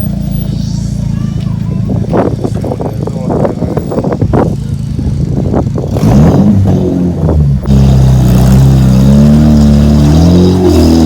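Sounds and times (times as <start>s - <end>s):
car engine revving: 2.1s - 11.0s.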